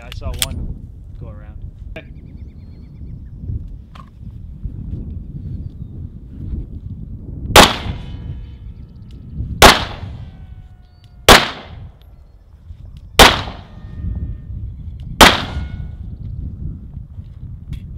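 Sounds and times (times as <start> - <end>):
pistol shots: 7.6 - 8.1, 9.6 - 10.1, 11.3 - 11.9, 13.2 - 13.7, 15.2 - 15.8
metallic ring of steel target: 15.2 - 16.0.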